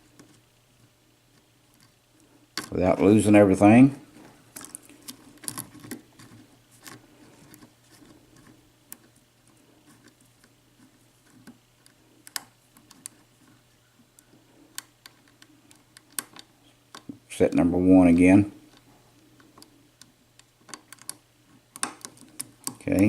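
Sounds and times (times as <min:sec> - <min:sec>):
lock pick clicking and scraping: 0:04.5 - 0:13.3, 0:14.2 - 0:17.2, 0:18.7 - 0:23.0.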